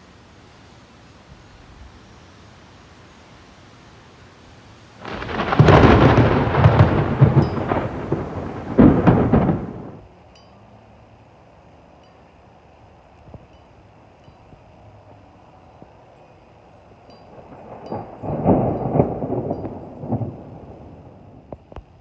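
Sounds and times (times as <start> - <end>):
thunder rumbling: 5.0 - 10.1, 17.3 - 22.0
wind chimes tinkling: 7.4 - 7.9, 17.0 - 18.2.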